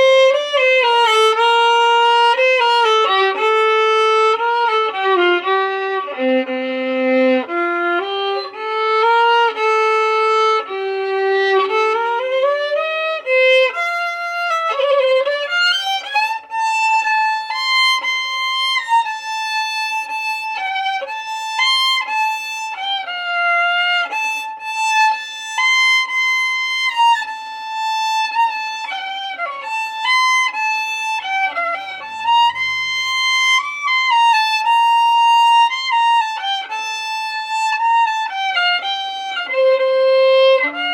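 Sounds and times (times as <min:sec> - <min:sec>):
violin melody: 0:00.0 - 0:40.9.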